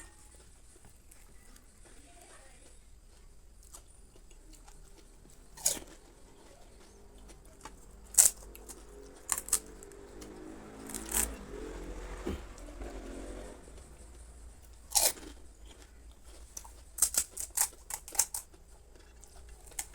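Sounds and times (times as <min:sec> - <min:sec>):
quiet chewing: 0:00.0 - 0:19.9
crisp shells crunching: 0:03.1 - 0:11.4, 0:14.8 - 0:19.9.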